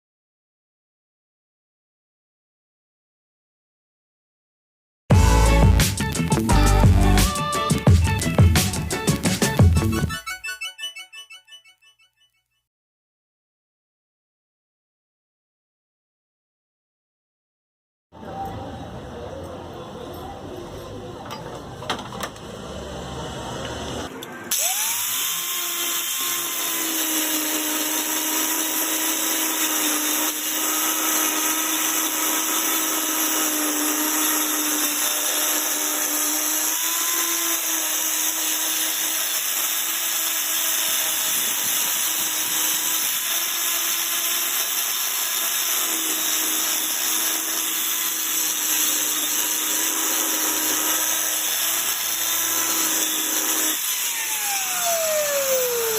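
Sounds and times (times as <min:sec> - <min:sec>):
power tool motor whine: 0:23.0 - 0:55.9.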